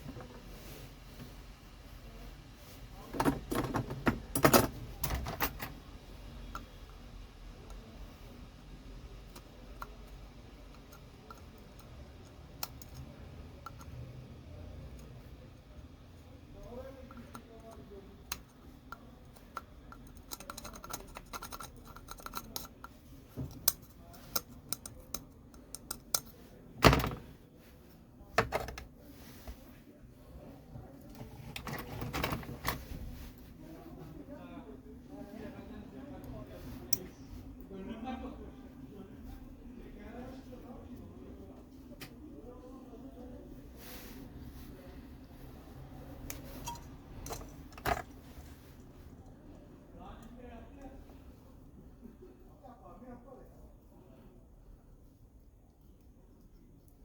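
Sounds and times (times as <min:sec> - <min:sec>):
tools handled on a bench: 0:03.0 - 0:05.8, 0:19.4 - 0:27.4, 0:28.3 - 0:29.6, 0:31.0 - 0:33.1, 0:46.2 - 0:48.5
small hard parts clicking and rattling: 0:17.1 - 0:26.3.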